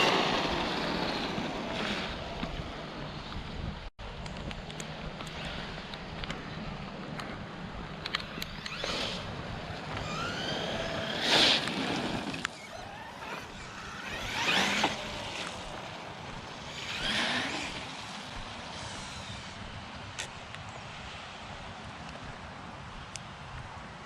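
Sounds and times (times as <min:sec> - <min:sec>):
rc truck electric motor whining: 0:08.4 - 0:15.8, 0:16.6 - 0:18.0.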